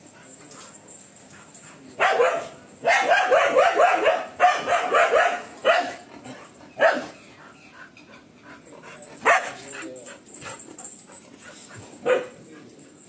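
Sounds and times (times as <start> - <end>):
dog barking: 2.0 - 6.0, 6.8 - 7.2, 9.2 - 9.6, 12.0 - 12.4.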